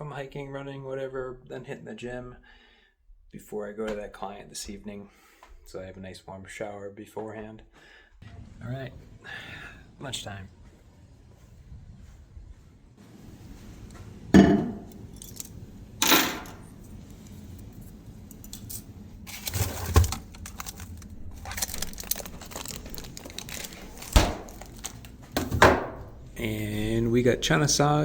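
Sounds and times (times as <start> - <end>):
dishes clinking and knocking: 14.4 - 15.1, 16.0 - 16.7
packaging rustling: 19.2 - 25.3.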